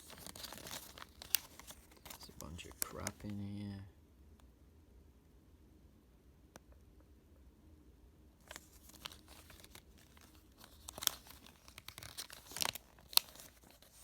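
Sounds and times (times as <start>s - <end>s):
paper rustling and crinkling: 0.0s - 3.4s, 8.4s - 14.0s.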